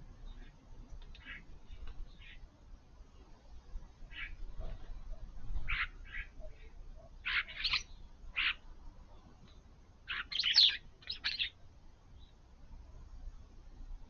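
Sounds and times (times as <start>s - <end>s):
garden birds calling: 0.0s - 2.6s, 4.0s - 12.5s.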